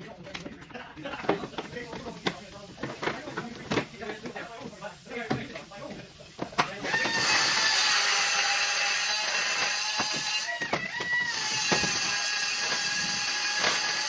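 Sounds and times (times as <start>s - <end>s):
power tool whining: 6.8s - 14.0s.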